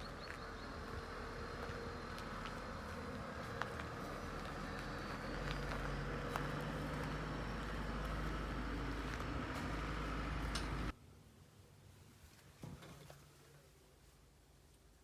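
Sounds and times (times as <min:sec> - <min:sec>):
diesel engine running: 0:00.0 - 0:11.0.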